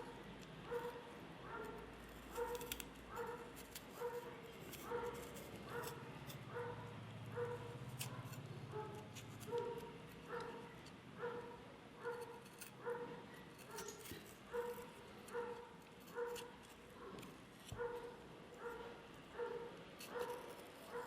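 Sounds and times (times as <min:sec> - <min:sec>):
dog barking: 0:00.1 - 0:21.0.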